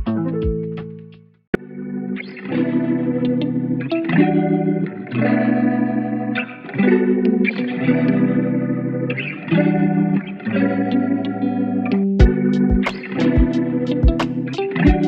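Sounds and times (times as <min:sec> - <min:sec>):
drum beat: 0:00.0 - 0:01.0, 0:12.2 - 0:15.0
guitar chords with chorus effect: 0:00.0 - 0:15.0.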